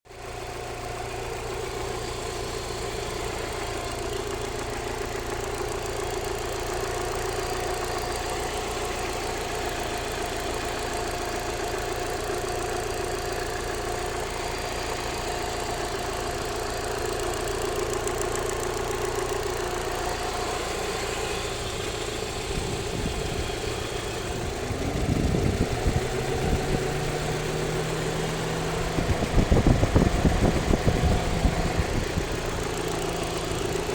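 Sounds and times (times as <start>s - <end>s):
car engine idling: 0.1s - 33.9s
engine ticking: 0.1s - 33.9s.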